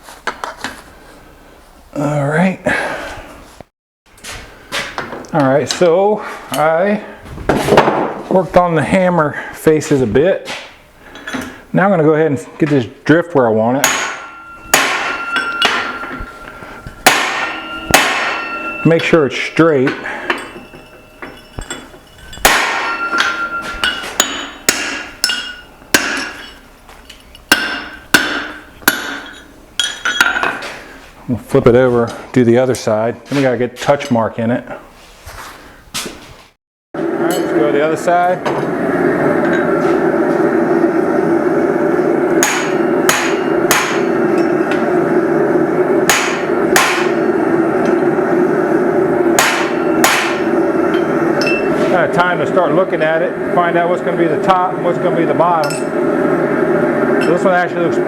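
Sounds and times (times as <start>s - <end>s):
hammer striking steel drift: 13.2s - 30.6s, 42.3s - 45.0s, 46.0s - 48.1s, 49.2s - 54.0s, 55.6s - 56.6s.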